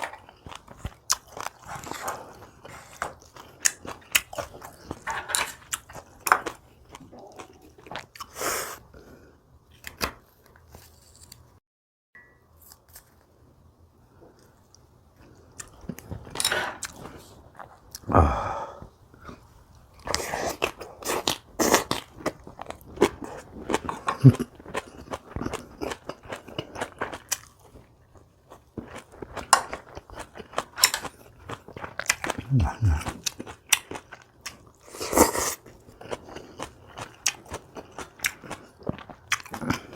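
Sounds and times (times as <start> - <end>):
crunching and wet chewing: 0.0 - 8.4, 20.0 - 39.9.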